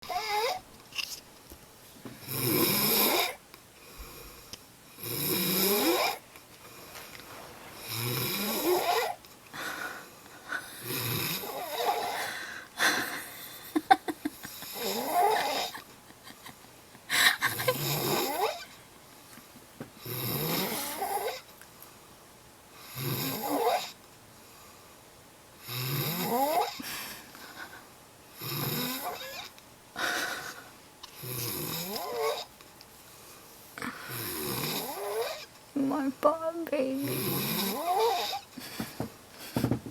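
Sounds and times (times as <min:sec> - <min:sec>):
man snoring: 0:00.0 - 0:00.6, 0:02.2 - 0:03.4, 0:05.0 - 0:06.2, 0:07.8 - 0:09.2, 0:10.6 - 0:12.4, 0:14.5 - 0:15.8, 0:17.5 - 0:18.6, 0:20.0 - 0:21.4, 0:22.8 - 0:24.0, 0:25.6 - 0:26.8, 0:28.4 - 0:29.5, 0:31.2 - 0:32.5, 0:33.8 - 0:35.5, 0:37.0 - 0:38.5.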